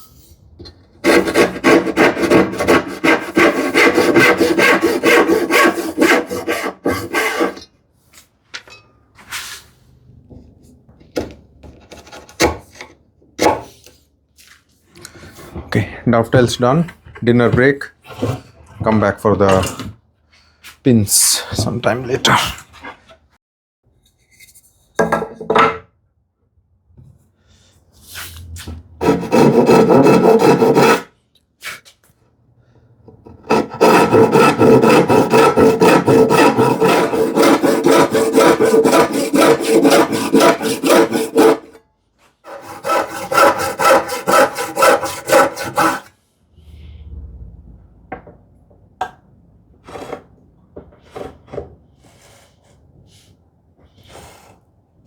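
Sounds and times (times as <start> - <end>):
hand saw cutting wood: 1.0 - 7.6, 29.0 - 31.1, 33.3 - 41.8, 42.4 - 46.2.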